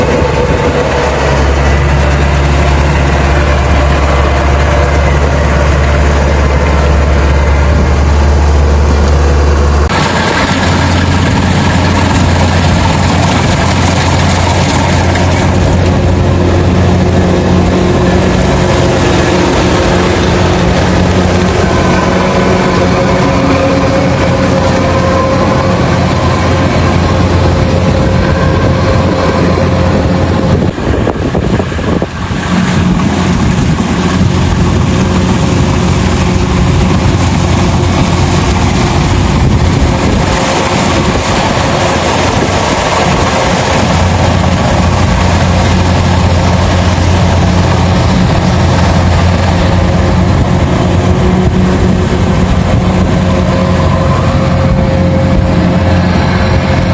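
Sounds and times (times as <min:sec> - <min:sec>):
harvester engine running: 0:00.0 - 0:56.9
threshing machine noise: 0:00.0 - 0:56.9.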